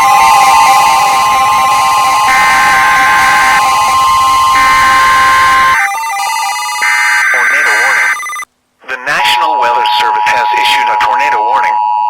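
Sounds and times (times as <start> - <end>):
higher tones switching on and off: 0.0 - 8.4
two-tone alert tone: 0.8 - 8.4.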